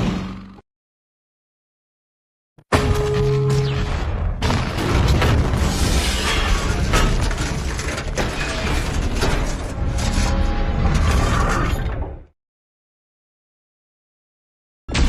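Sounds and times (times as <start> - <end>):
crashes and impacts: 2.8 - 11.4.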